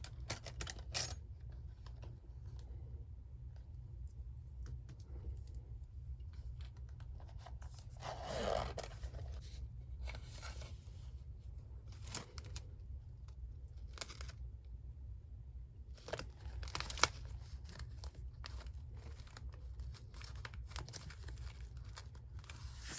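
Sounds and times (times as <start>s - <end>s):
low steady hum: 0.0s - 22.9s
paper rustling: 16.0s - 22.9s.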